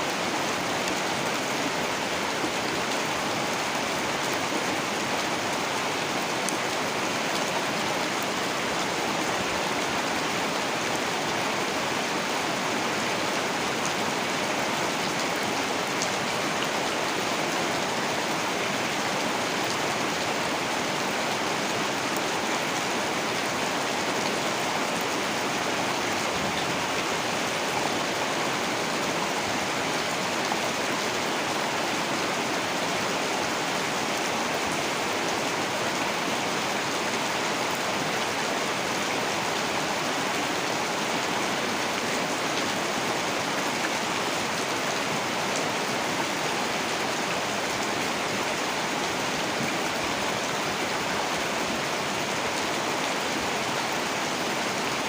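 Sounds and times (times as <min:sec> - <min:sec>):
heavy rain: 0:00.0 - 0:55.0.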